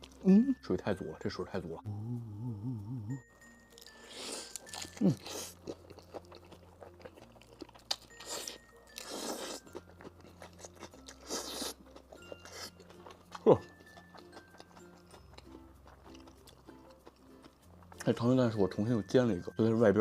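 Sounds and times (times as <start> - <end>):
person eating crunchy food: 3.7 - 18.0.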